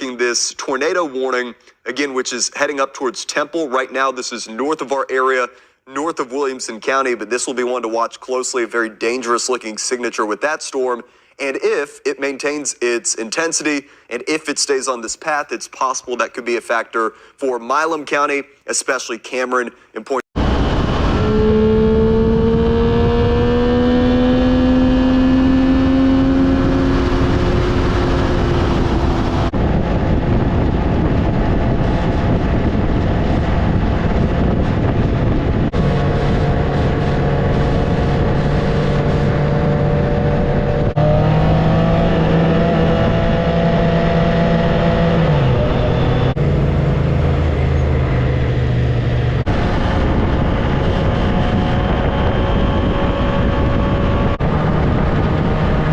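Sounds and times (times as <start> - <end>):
motorcycle engine accelerating: 20.4 - 55.9
rushing wind noise: 20.4 - 55.9.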